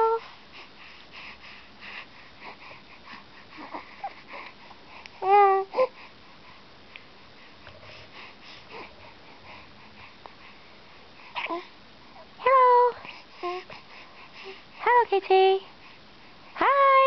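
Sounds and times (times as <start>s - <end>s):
baby cooing: 5.2s - 5.9s, 11.4s - 11.7s.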